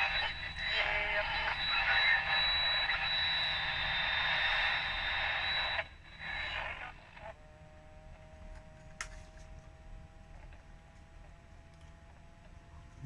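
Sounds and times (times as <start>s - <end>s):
steady high whistle: 0.0s - 6.8s
radio static hiss: 0.0s - 7.4s
faint steady tones: 0.0s - 13.0s.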